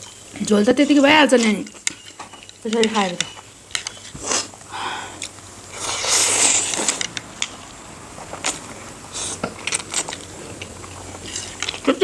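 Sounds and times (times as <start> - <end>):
utensils clicking: 0.0 - 8.6
chewing clicks: 1.7 - 12.0
loud slurp: 4.2 - 11.9.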